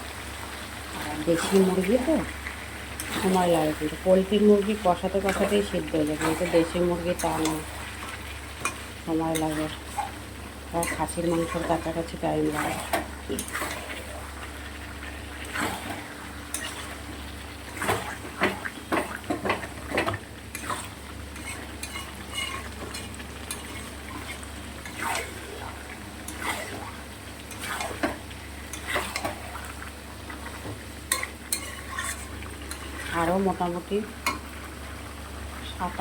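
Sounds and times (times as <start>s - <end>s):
chicken sizzling: 0.0s - 36.0s
spatula scraping a pan: 15.4s - 17.1s, 20.5s - 25.6s, 26.2s - 33.1s.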